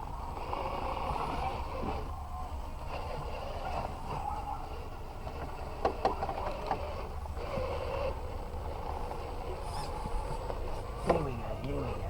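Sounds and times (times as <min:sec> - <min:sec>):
electric motor and gears whining: 0:00.0 - 0:12.0
sharp clicks and knocks: 0:05.3 - 0:06.9.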